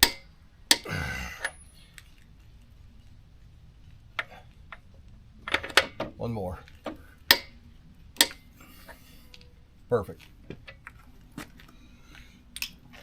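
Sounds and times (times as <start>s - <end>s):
wrench clicking on axle nut: 0.0s - 2.2s, 6.7s - 7.6s, 8.2s - 8.5s.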